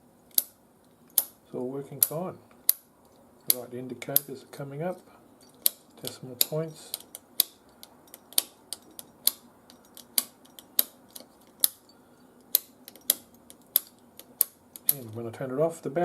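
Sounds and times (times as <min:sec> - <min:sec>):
rotary switch detent clicks: 0:00.3 - 0:01.4, 0:02.0 - 0:02.9, 0:05.6 - 0:11.8, 0:12.5 - 0:15.0.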